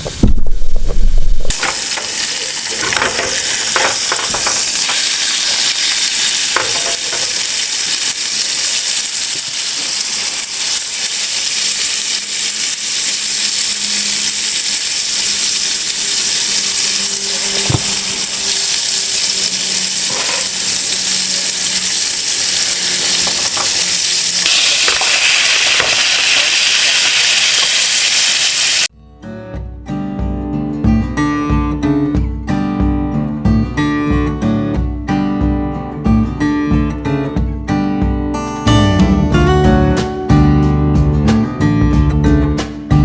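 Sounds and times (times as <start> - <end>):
patties sizzling in frying pan: 1.5 - 28.9
utensil knocking on pan: 2.8 - 5.0.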